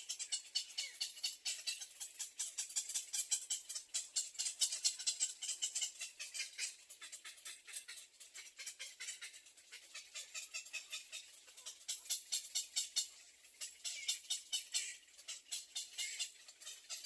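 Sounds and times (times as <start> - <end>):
nestling birds chirping: 0.0 - 17.0.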